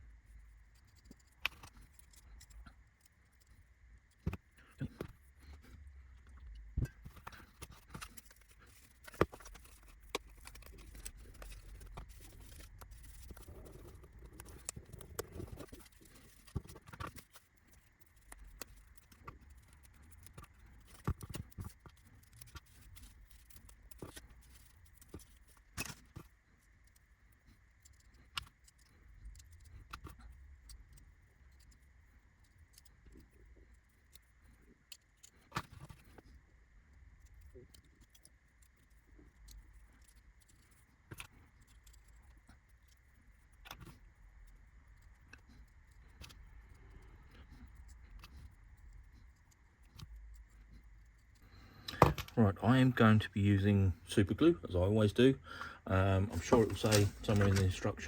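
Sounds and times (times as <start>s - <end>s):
soft rustling: 56.0s - 58.0s.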